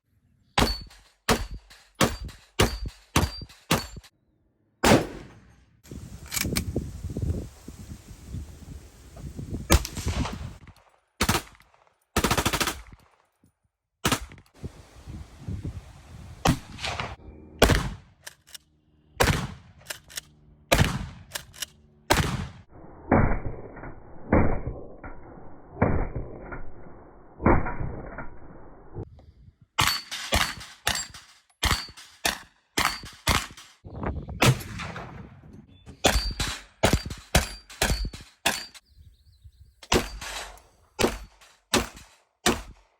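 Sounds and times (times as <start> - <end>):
gunshots: 0.6 - 4.1, 4.8 - 5.6, 9.7 - 13.0, 14.0 - 14.4, 16.4 - 18.2, 19.2 - 19.9, 20.7 - 23.5, 34.4 - 38.7, 39.9 - 42.9.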